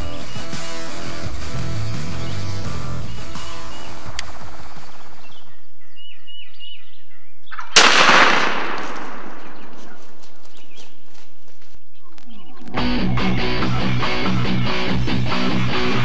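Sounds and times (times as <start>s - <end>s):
wild turkey calling: 0.0s - 7.8s
shotgun blast: 7.5s - 9.7s.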